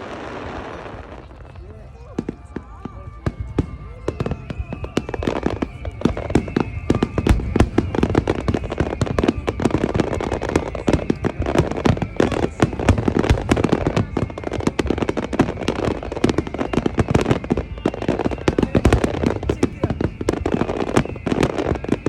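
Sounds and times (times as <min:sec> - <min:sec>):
fireworks bursting: 0:00.0 - 0:22.0.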